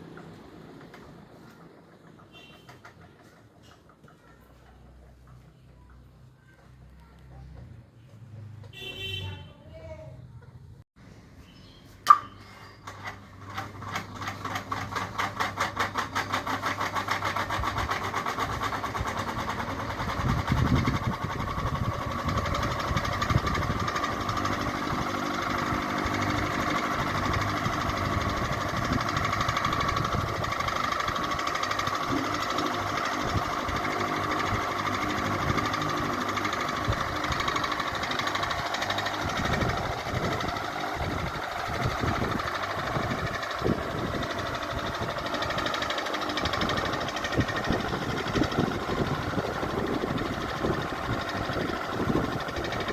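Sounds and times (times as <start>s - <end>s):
fan switch click: 12.0s - 12.3s
ceiling fan whirring: 12.0s - 52.9s.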